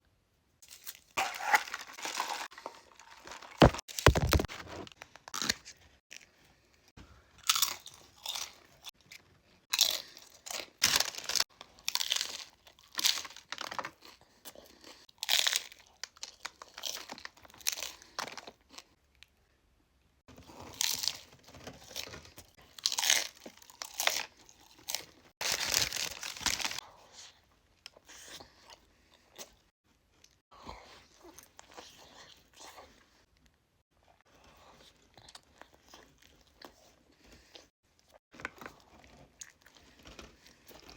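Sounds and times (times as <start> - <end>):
crunchy bites and chewing: 0.6 - 6.4, 7.4 - 19.0, 20.4 - 26.8.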